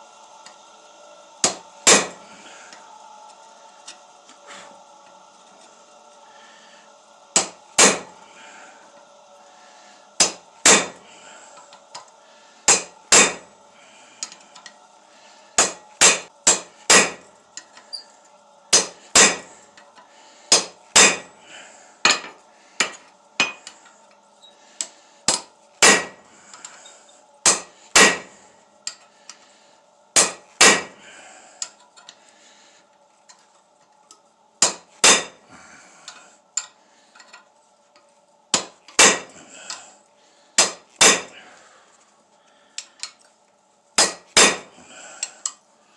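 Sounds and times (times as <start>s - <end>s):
faint steady hum: 0.0s - 45.9s
hammer striking steel on anvil: 1.4s - 2.2s, 7.4s - 8.2s, 10.2s - 11.0s, 12.7s - 13.5s, 15.6s - 17.3s, 18.7s - 19.5s, 20.5s - 21.3s, 22.1s - 23.8s, 25.3s - 26.2s, 27.4s - 28.4s, 30.2s - 31.0s, 34.6s - 35.4s, 38.5s - 39.4s, 40.6s - 41.3s, 44.0s - 44.7s.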